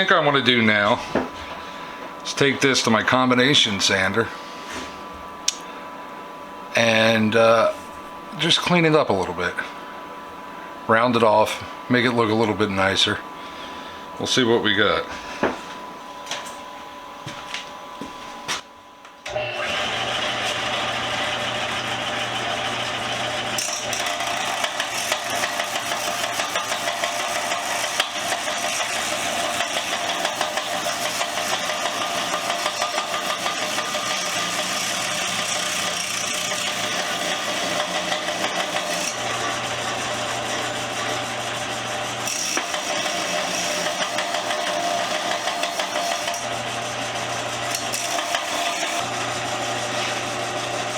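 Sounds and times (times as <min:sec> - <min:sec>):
sander humming: 0:19.3 - 0:50.9
metal grinding against sander: 0:19.4 - 0:50.9.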